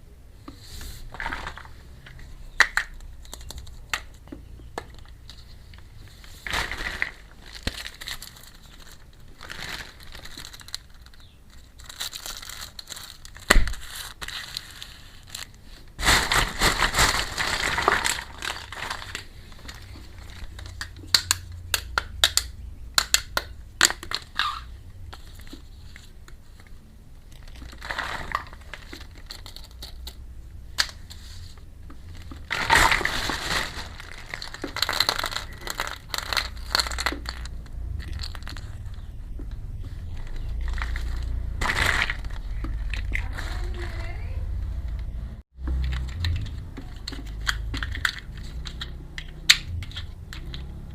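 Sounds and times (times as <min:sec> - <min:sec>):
plastic packaging crinkling: 0:01.1 - 0:23.1, 0:23.8 - 0:44.4
small hard pieces clicking: 0:01.2 - 0:05.8, 0:06.4 - 0:15.6, 0:32.1 - 0:43.8, 0:45.7 - 0:50.9.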